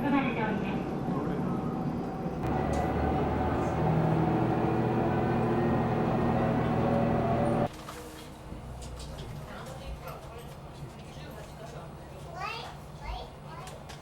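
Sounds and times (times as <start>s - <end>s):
rail noise: 0.0s - 7.7s
train engine hum: 0.0s - 7.7s.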